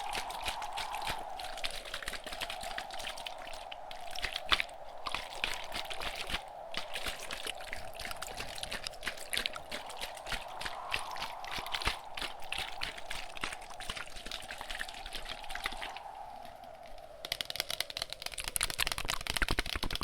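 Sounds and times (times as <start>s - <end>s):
background wind: 0.0s - 20.0s.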